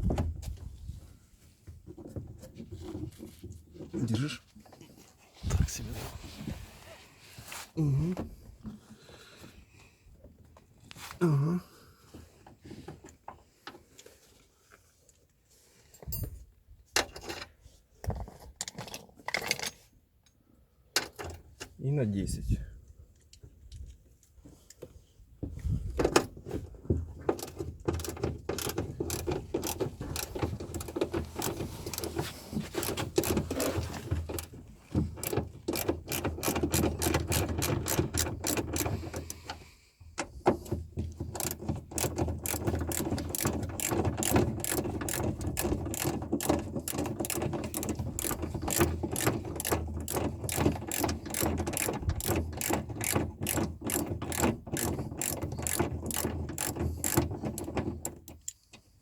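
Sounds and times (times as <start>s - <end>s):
ratchet wrench clicking: 27.4s - 32.1s, 35.2s - 39.3s, 41.3s - 58.6s.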